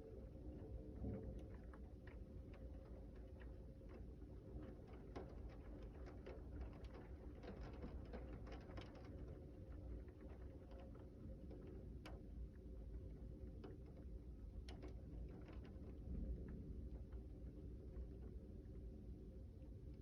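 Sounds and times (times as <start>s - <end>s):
raindrops pattering on surfaces: 1.3s - 9.3s
low steady rumble: 8.5s - 20.0s.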